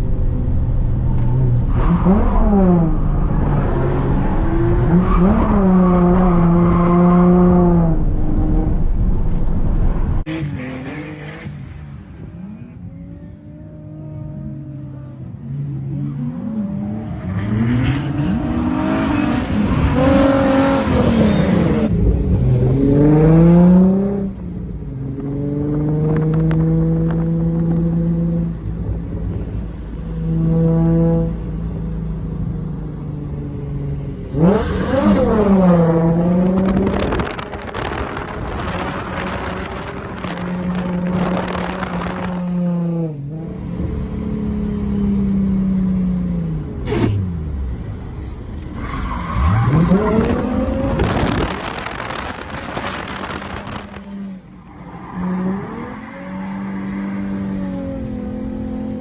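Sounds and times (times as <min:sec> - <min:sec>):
car engine revving: 0:15.8 - 0:59.0.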